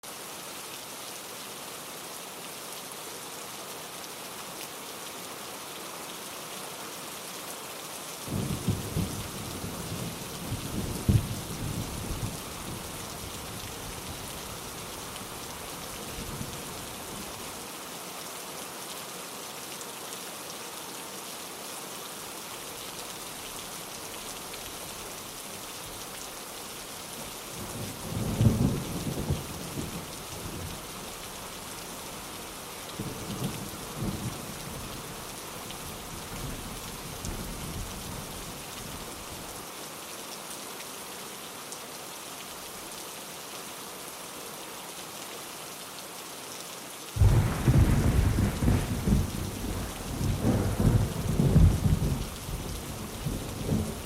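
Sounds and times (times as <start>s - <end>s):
steady rain falling: 0.0s - 54.0s
thunder rumbling: 47.2s - 54.0s.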